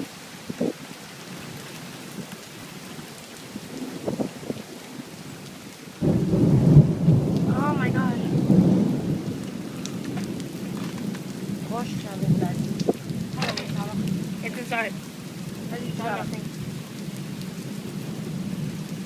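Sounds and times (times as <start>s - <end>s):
rain falling: 0.0s - 19.0s
thunder rumble: 6.0s - 19.0s.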